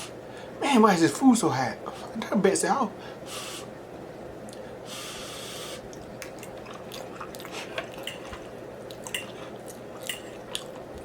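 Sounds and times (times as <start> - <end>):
faint steady hum: 0.0 - 11.0
breathy hiss of air: 3.0 - 3.8, 4.8 - 5.9
chewing wet food: 5.8 - 11.0.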